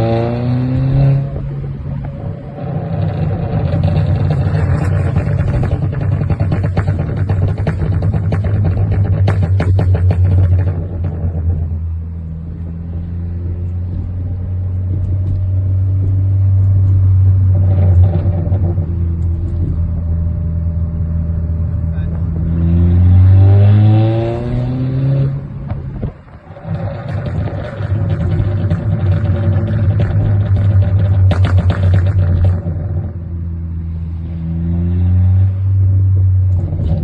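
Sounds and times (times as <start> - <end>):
exhaust pops: 0.0 - 20.6, 23.2 - 33.6, 35.5 - 37.0
car engine idling and revving: 0.0 - 37.0.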